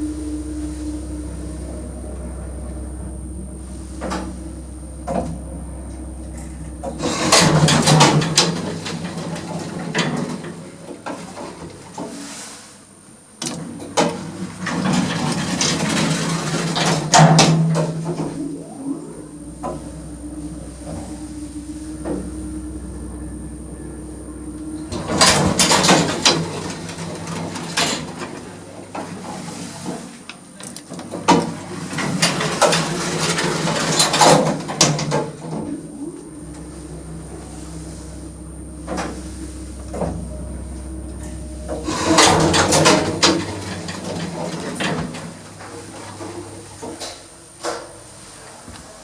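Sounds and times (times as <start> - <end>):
lift motor humming: 0.0 - 12.2, 13.4 - 48.0.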